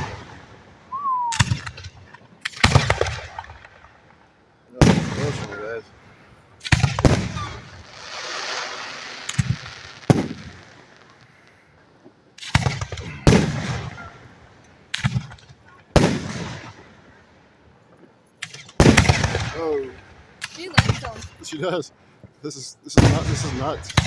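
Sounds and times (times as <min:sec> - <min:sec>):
fireworks shells bursting: 0:00.0 - 0:11.7
fireworks crackling hiss: 0:04.7 - 0:17.3, 0:18.5 - 0:24.0.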